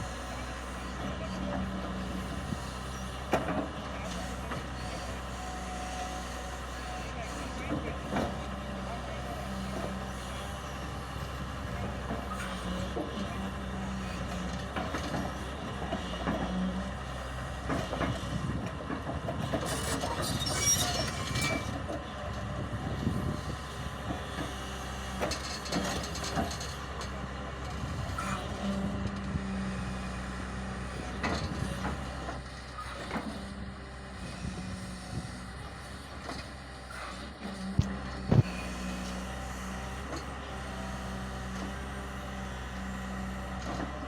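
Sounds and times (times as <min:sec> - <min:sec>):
excavator engine and hydraulics droning: 0:00.0 - 0:44.0
brief squeal: 0:20.2 - 0:21.7.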